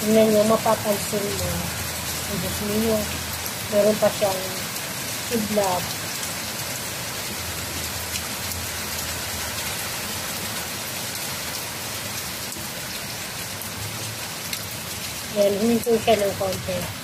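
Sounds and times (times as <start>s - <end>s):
heavy rain pouring: 0.0s - 17.0s.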